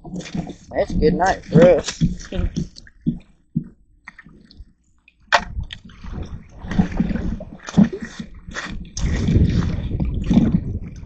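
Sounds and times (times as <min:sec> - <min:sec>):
water splashing: 0:00.0 - 0:11.0
dull low thumps: 0:05.3 - 0:11.0.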